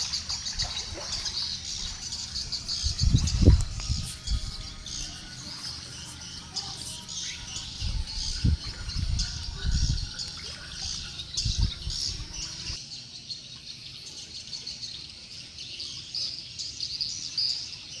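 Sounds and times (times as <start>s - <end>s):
swiftlets twittering: 0.0s - 12.8s
low rumble: 1.8s - 5.3s.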